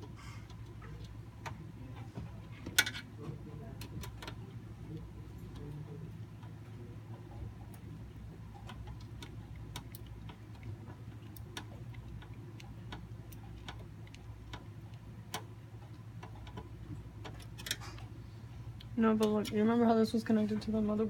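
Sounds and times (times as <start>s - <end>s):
steady low hum: 0.0s - 21.0s
clicks of computer parts handled: 2.6s - 3.1s, 16.2s - 18.0s.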